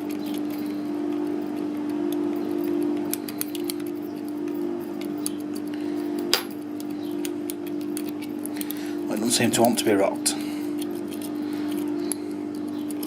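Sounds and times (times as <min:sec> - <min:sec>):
low hum: 0:00.0 - 0:13.0
lock pick clicking in padlock: 0:01.8 - 0:04.0.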